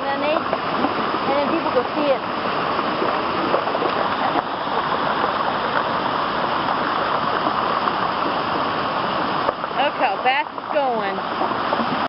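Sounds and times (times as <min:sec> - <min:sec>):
rushing floodwater: 0:00.0 - 0:12.0.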